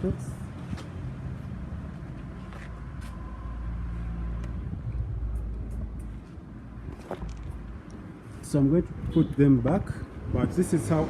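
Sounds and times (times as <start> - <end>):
motor vehicle engine rumble: 0.0 - 10.6.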